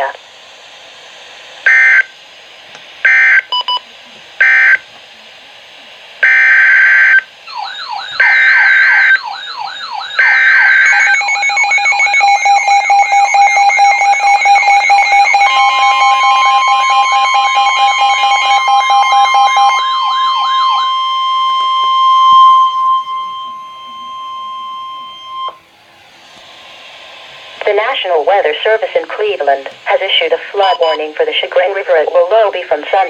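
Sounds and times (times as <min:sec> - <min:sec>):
steady warning tone: 0:01.6 - 0:02.1, 0:04.4 - 0:04.8, 0:06.2 - 0:25.7, 0:27.6 - 0:33.0
siren-like sweeping tone: 0:06.5 - 0:25.6
screechy data bursts: 0:07.5 - 0:25.4.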